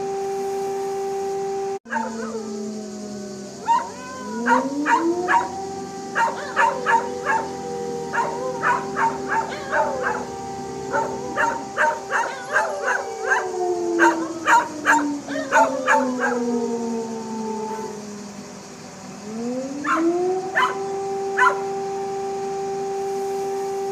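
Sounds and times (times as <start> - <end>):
siren winding down: 1.8 - 23.9
dogs barking and howling: 1.9 - 22.4.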